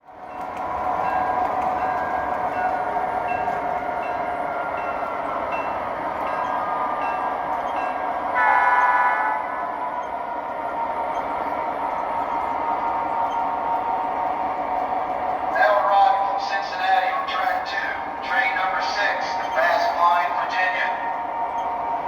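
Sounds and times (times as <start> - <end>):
diesel locomotive idling: 0.0 - 22.0
locomotive bell ringing: 0.3 - 14.2, 15.6 - 21.8
locomotive horn blast: 8.4 - 9.6.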